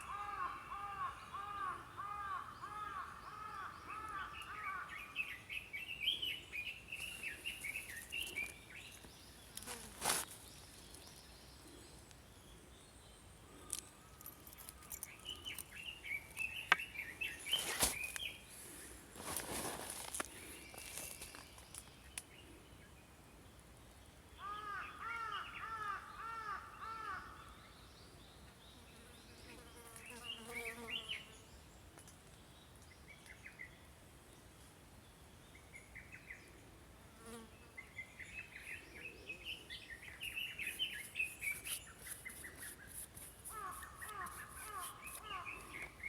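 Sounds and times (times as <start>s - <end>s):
birds chirping: 0.0s - 22.9s, 37.8s - 46.0s.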